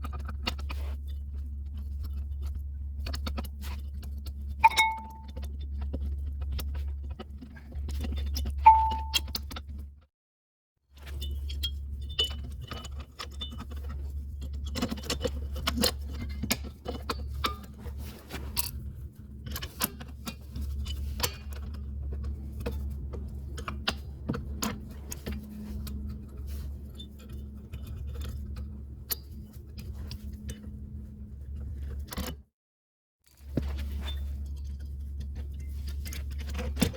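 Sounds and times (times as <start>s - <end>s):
metal tools clicking and clinking: 4.6s - 5.4s.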